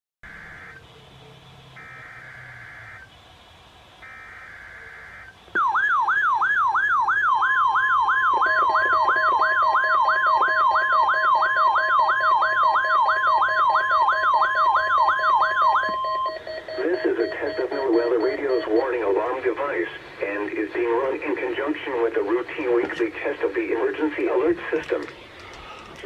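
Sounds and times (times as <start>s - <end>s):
warbling siren: 0.2s - 22.4s
steady alarm tone: 0.2s - 24.5s.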